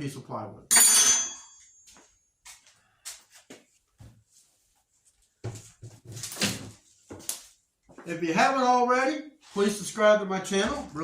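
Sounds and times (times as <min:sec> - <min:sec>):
ringing metallic clink: 0:00.7 - 0:01.8
soft knocks and rustles: 0:03.3 - 0:08.0.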